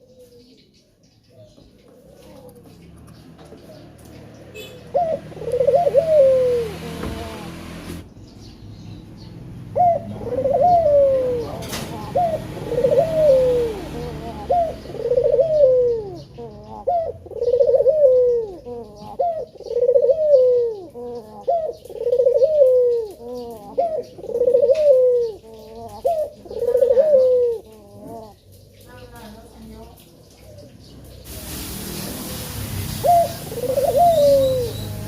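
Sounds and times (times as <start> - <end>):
dove cooing: 1.9 - 7.7, 9.7 - 28.5, 33.0 - 35.0.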